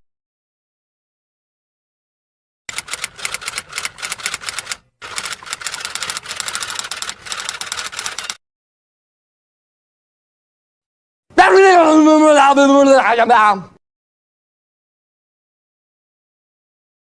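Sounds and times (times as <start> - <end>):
rapid typing keystrokes: 2.7 - 8.4.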